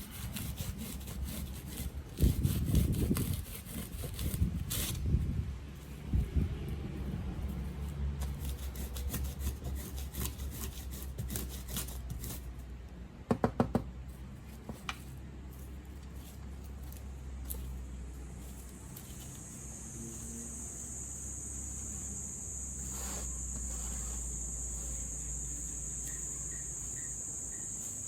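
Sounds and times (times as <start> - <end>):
bark rasping with scraping tool: 0.0 - 5.0, 8.2 - 12.5.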